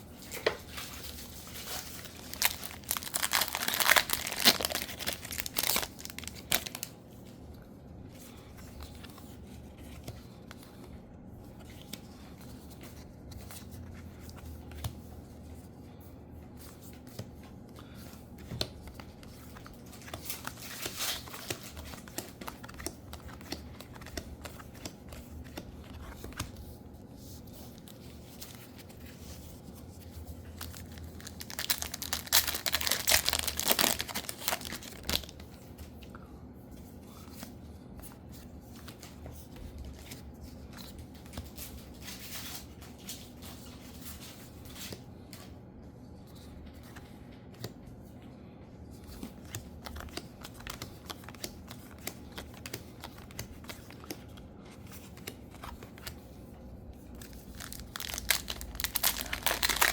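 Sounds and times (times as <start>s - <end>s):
cards rustling and clicking: 0.2s - 6.9s, 16.6s - 36.0s, 49.0s - 59.9s
foil wrappers crinkling and tearing: 0.7s - 6.9s, 30.6s - 35.4s, 57.0s - 59.9s.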